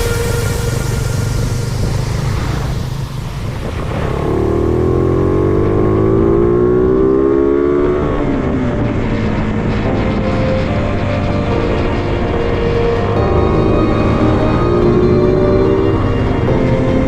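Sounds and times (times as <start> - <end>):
motorcycle engine accelerating: 0.6 - 17.0.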